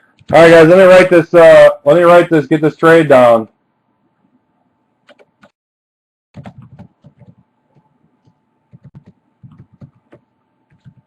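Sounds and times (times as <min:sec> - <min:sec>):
computer keyboard typing: 0:05.0 - 0:05.6, 0:06.4 - 0:11.0.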